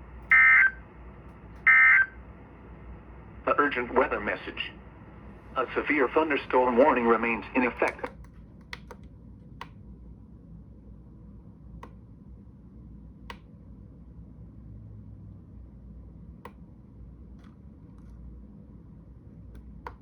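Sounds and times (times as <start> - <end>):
low steady hum: 0.0 - 20.0
sharp clicks: 7.8 - 9.8.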